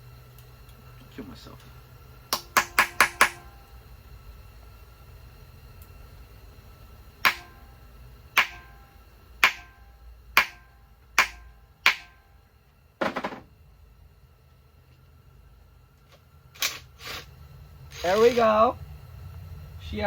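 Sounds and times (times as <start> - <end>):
sharp metal-on-metal strikes: 2.3 - 3.6, 7.2 - 7.8, 8.4 - 12.4.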